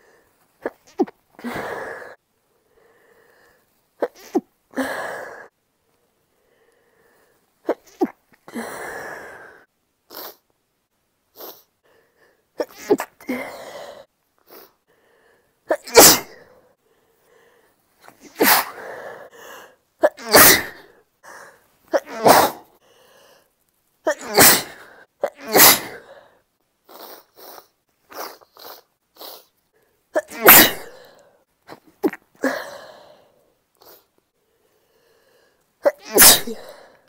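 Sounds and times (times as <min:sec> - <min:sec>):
breaths: 0:00.0 - 0:00.4, 0:01.4 - 0:03.8, 0:04.7 - 0:07.6, 0:08.5 - 0:09.7, 0:11.3 - 0:12.6, 0:13.2 - 0:15.7, 0:16.4 - 0:19.9, 0:20.8 - 0:21.8, 0:22.7 - 0:23.6, 0:24.6 - 0:25.2, 0:25.9 - 0:27.8, 0:29.2 - 0:30.2, 0:30.9 - 0:31.5, 0:32.4 - 0:35.8, 0:36.6 - 0:37.0
woman sneezing: 0:12.6 - 0:13.5, 0:15.7 - 0:16.4, 0:18.2 - 0:18.8, 0:20.0 - 0:20.9, 0:21.9 - 0:22.7, 0:24.1 - 0:26.1, 0:30.2 - 0:31.1, 0:35.8 - 0:36.8.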